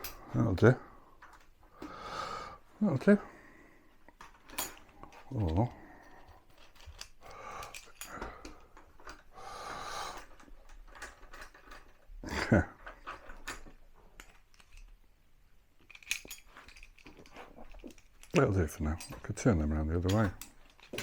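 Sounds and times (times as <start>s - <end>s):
metal clamps clicking and scraping: 4.1s - 9.3s, 10.1s - 15.0s, 15.8s - 21.0s.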